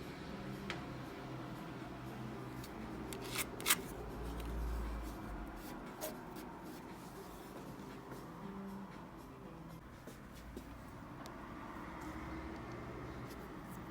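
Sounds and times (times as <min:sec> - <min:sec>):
handling and rubbing sounds: 0:02.5 - 0:08.2, 0:13.1 - 0:13.9.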